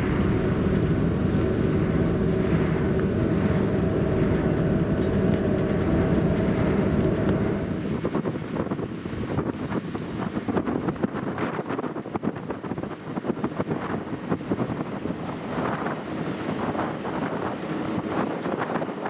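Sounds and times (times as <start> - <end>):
steady rush of noise: 0.0 - 8.2
wind buffeting microphone: 0.0 - 19.0.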